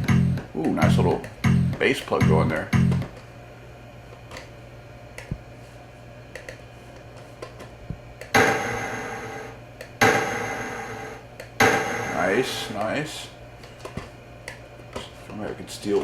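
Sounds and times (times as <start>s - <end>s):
digitised percussion hit: 8.4s - 12.9s.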